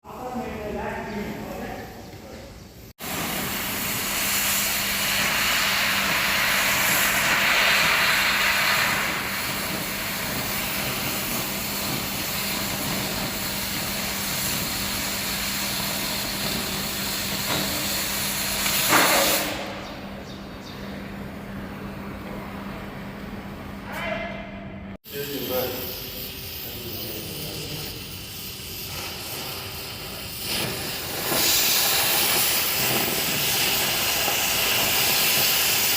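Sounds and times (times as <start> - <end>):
fountain firework hissing: 2.9 - 19.7, 25.1 - 35.9.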